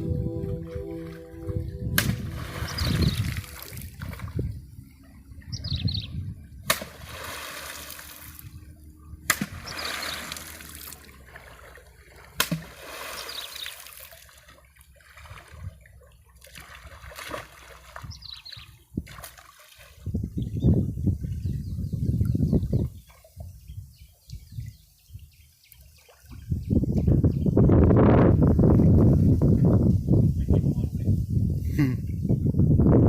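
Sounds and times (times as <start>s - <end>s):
water splashing: 0.0s - 5.7s, 6.4s - 20.1s
low rumble: 0.0s - 7.0s.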